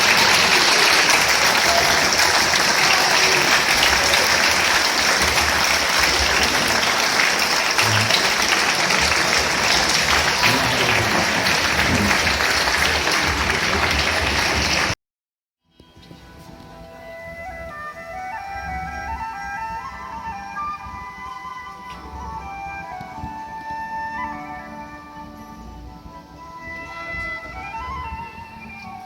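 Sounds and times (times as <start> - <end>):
audience applauding: 0.0 - 15.0.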